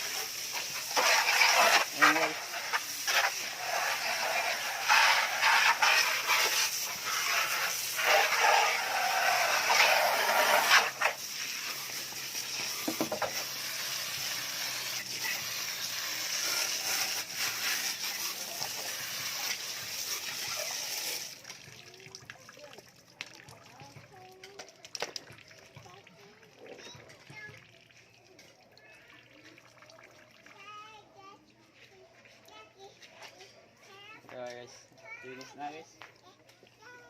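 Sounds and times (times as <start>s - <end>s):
water spraying onto air conditioner: 0.0s - 27.6s.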